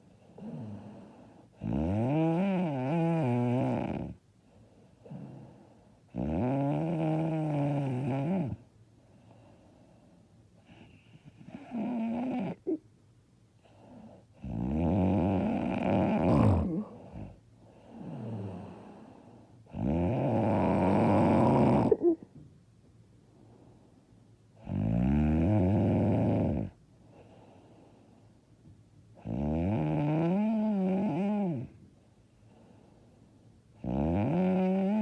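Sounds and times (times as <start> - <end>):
quiet breathing: 0.0 - 1.6, 3.2 - 6.2, 7.2 - 14.6, 15.4 - 22.5, 23.2 - 24.6, 25.9 - 29.2, 30.2 - 35.0
woman snoring: 0.3 - 4.2, 6.1 - 8.6, 10.6 - 12.8, 13.9 - 19.1, 19.7 - 22.2, 24.6 - 26.8, 29.2 - 31.8, 33.8 - 35.0.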